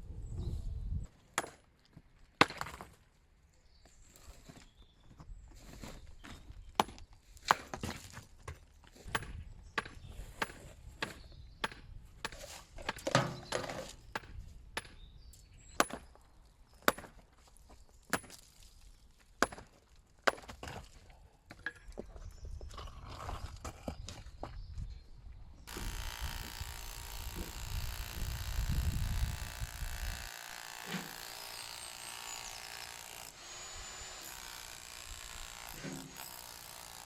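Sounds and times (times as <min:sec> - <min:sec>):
hand tool striking: 0:29.4 - 0:37.0.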